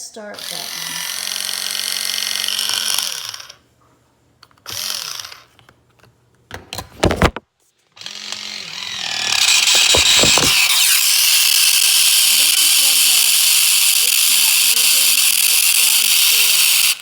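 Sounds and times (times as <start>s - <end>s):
can opener motor screeching: 0.4s - 3.6s, 4.6s - 5.6s, 8.0s - 17.0s
sharp knocks: 9.6s - 10.8s.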